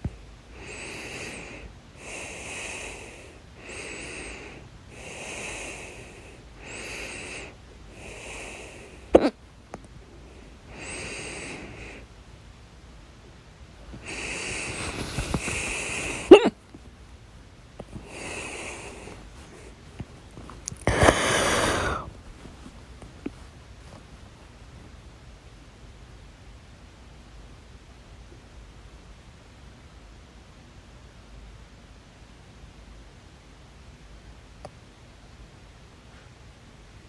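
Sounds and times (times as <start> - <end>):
breathing in and out: 0.5 - 9.3, 10.0 - 12.1, 13.8 - 17.0, 17.8 - 24.5
person hiccuping: 16.1 - 16.6.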